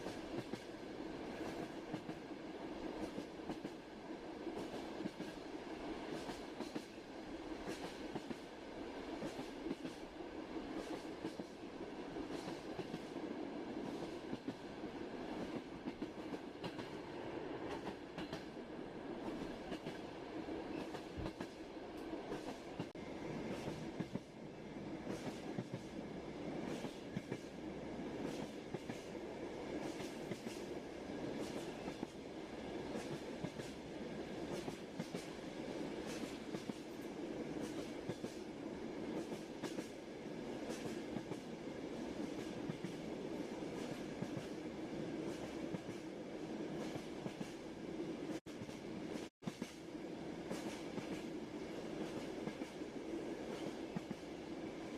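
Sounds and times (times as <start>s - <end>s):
wheels clickety-clack over rail joints: 0.0s - 54.4s
train rolling rumble: 0.0s - 54.9s.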